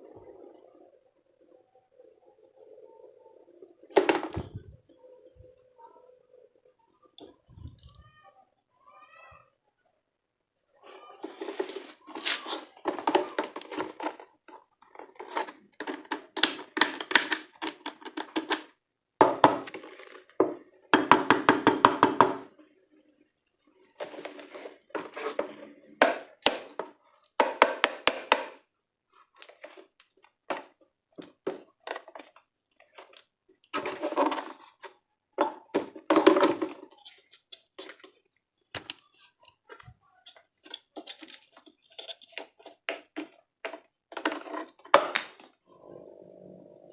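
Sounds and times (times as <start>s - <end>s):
plastic pieces knocking and scraping: 3.9s - 4.7s, 11.2s - 22.5s, 24.0s - 28.6s, 29.2s - 45.6s.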